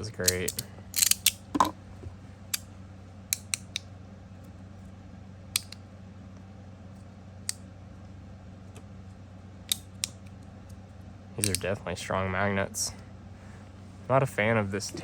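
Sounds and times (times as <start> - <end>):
magnetic fidget slider clicking: 0.2 - 1.7, 5.5 - 5.8, 11.4 - 11.7.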